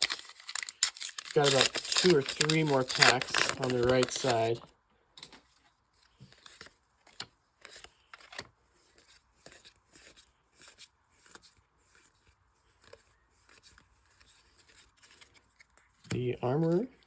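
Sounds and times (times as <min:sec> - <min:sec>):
trading cards snapping and rustling: 0:00.0 - 0:04.6, 0:06.2 - 0:12.1.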